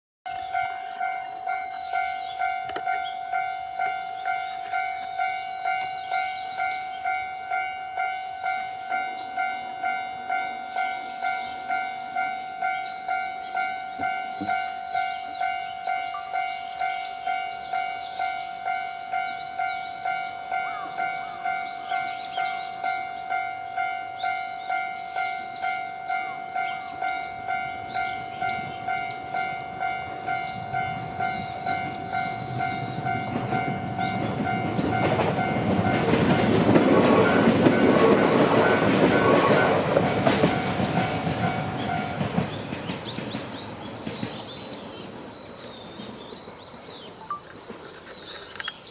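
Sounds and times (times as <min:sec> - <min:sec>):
electric train passing: 0:00.3 - 0:48.9.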